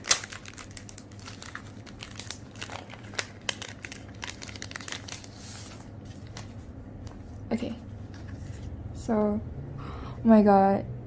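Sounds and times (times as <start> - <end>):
paper and plastic crinkling: 0.0 - 8.7.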